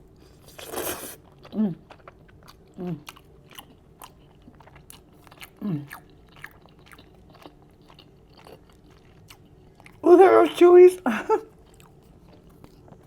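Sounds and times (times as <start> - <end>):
wet chewing clicks and smacks: 1.3 - 10.0.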